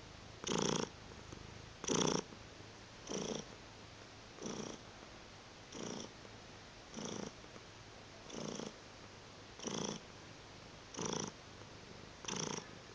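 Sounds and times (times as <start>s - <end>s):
cat purring: 0.4s - 2.4s, 3.0s - 3.6s, 4.4s - 5.0s, 5.7s - 7.6s, 8.2s - 8.8s, 9.6s - 10.1s, 10.8s - 12.9s.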